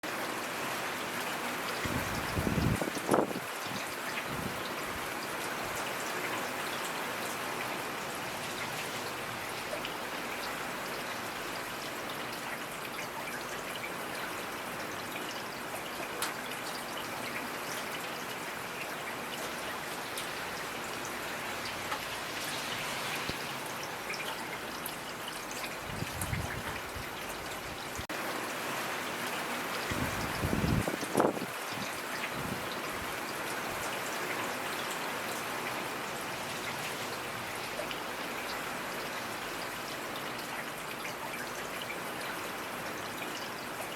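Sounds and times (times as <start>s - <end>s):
steady rainfall: 0.0s - 43.9s
rain hissing: 20.2s - 24.2s.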